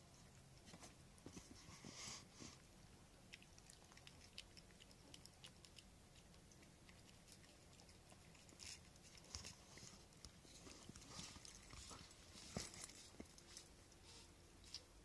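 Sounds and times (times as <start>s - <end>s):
cats licking wet clicks: 3.2s - 11.9s.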